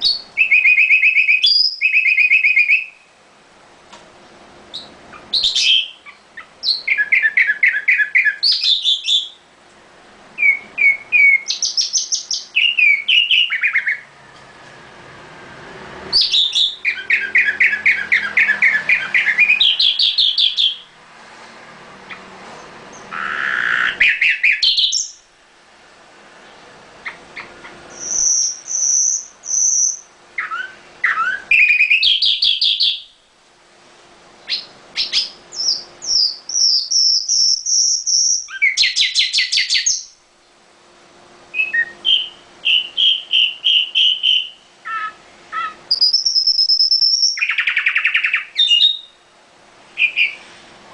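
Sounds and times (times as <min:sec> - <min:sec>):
nightingale singing trills: 0:00.0 - 0:03.1, 0:04.7 - 0:09.4, 0:10.4 - 0:14.1, 0:16.1 - 0:20.9, 0:22.9 - 0:25.3, 0:27.0 - 0:33.2, 0:34.5 - 0:40.2, 0:41.5 - 0:49.2, 0:50.0 - 0:50.5.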